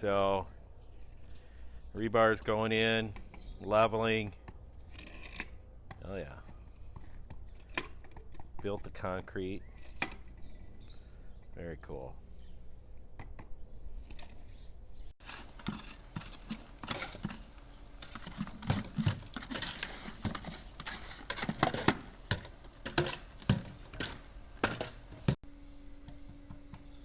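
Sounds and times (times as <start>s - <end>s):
hand tools tapping and scraping: 2.7s - 10.8s, 13.2s - 25.4s.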